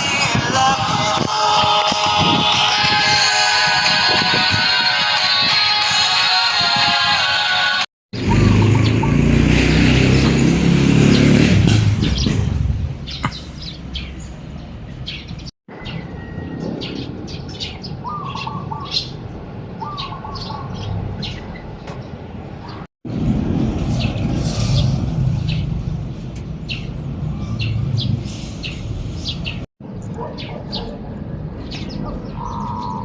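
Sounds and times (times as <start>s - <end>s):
birds chirping: 8.2s - 22.9s, 23.9s - 33.0s
loud low rumble: 19.1s - 29.6s.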